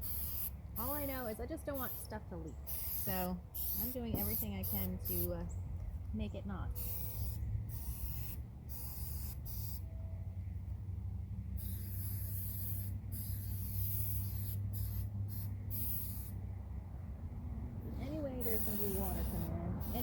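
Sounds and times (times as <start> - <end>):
aerosol can spraying: 0.0 - 2.1, 2.7 - 5.3, 6.8 - 9.8, 11.6 - 16.4, 18.4 - 20.0.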